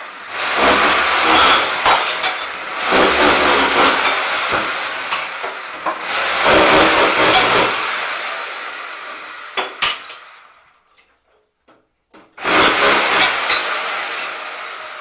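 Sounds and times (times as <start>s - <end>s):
rotary hammer chipping tiles: 0.4s - 8.0s, 12.4s - 14.4s
clinks of falling tile: 1.9s - 2.6s, 3.9s - 6.0s, 9.6s - 10.3s.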